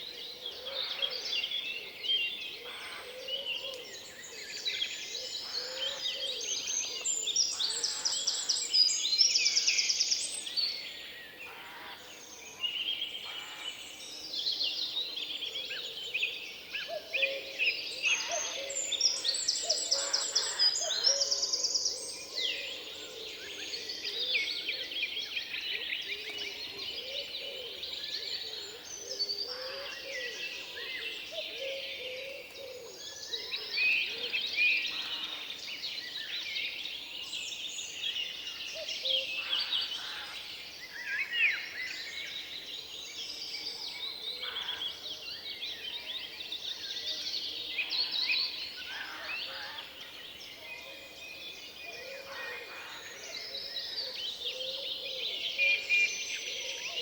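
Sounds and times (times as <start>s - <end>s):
songbirds singing: 0.0s - 57.0s.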